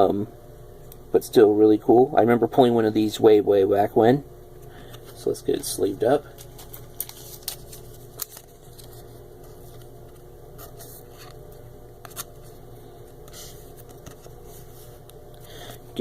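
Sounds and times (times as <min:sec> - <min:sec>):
steady low hum: 0:00.0 - 0:16.0
card sliding into plastic sleeve: 0:06.3 - 0:16.0.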